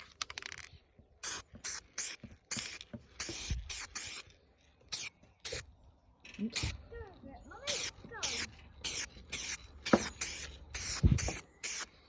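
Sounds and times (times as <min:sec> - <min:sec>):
spray hissing bursts: 0:01.2 - 0:04.2, 0:07.6 - 0:12.0.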